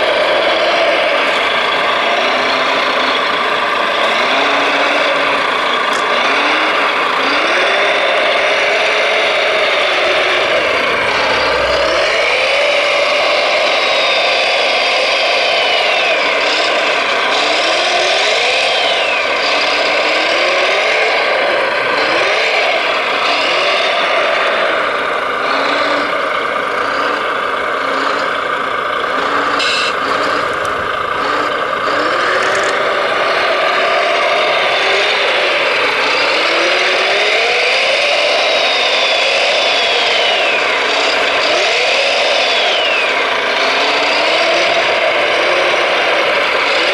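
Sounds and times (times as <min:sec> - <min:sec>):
steady mechanical hum: 0:00.0 - 0:14.1, 0:26.1 - 0:36.4
electric motors whining: 0:00.0 - 0:46.9.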